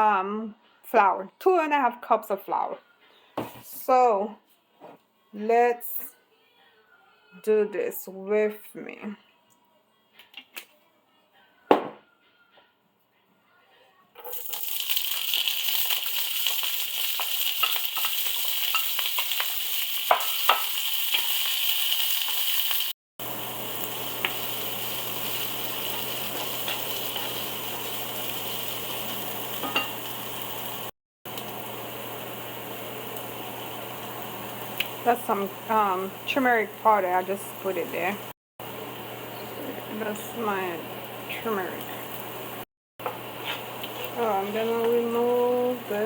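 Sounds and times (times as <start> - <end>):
knock: 11.7 - 12.0
food sizzling in a frying pan: 14.2 - 46.0.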